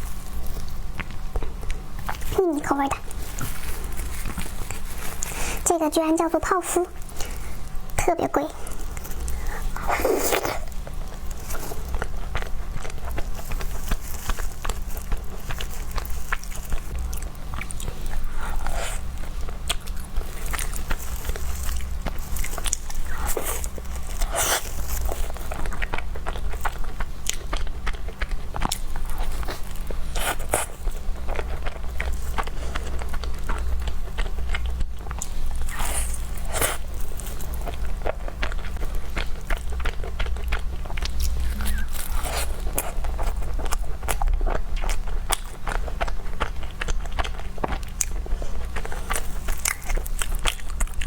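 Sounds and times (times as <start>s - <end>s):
person chewing crunchy food: 0.0s - 6.3s, 6.9s - 51.0s
low hum: 37.0s - 43.7s.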